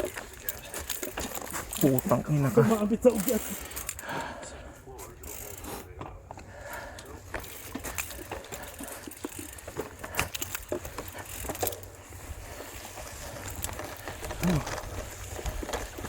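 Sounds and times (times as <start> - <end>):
bicycle rattling on dirt trail: 0.0 - 16.0
low tyre rumble: 5.8 - 16.0.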